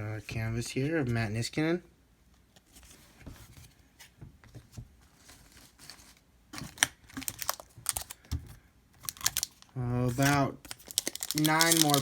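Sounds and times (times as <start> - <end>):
trading cards rustling: 5.2 - 8.3, 9.0 - 12.0.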